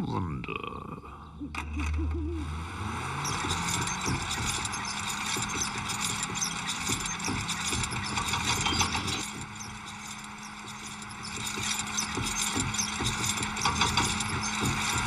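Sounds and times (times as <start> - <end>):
rapid uneven knocking: 3.2 - 15.0.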